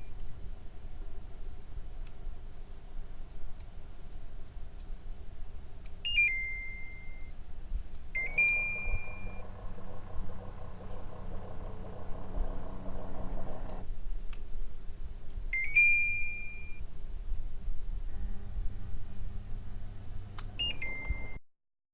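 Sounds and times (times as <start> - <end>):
fan humming: 8.0 - 13.9
air conditioner beeping: 8.2 - 13.8, 20.5 - 21.4
low rumble: 8.2 - 13.9.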